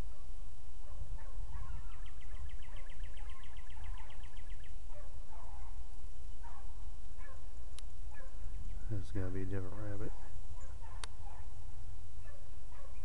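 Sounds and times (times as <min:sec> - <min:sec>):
songbird trill: 0:00.0 - 0:13.0.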